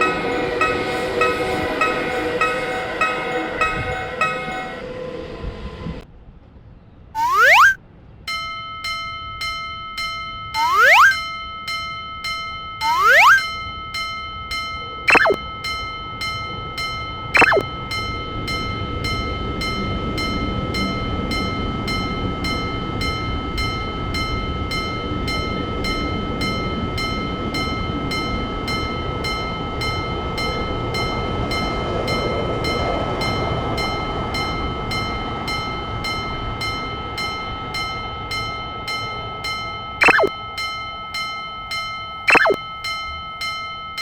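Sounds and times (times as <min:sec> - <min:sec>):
electric train rumbling past: 0:00.0 - 0:06.0
level-crossing warning bell: 0:00.0 - 0:06.0, 0:08.3 - 0:44.0.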